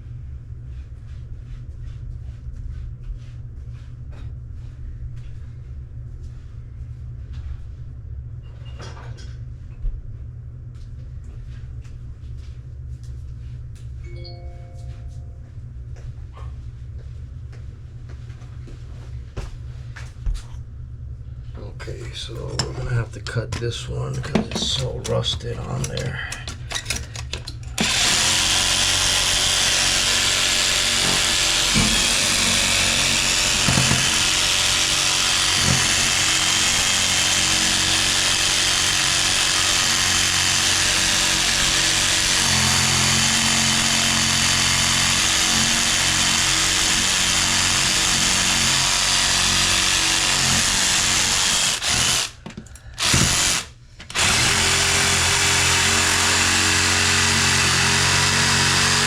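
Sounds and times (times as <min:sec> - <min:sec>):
power saw cutting metal nut: 0:26.8 - 0:52.4, 0:53.0 - 0:59.0.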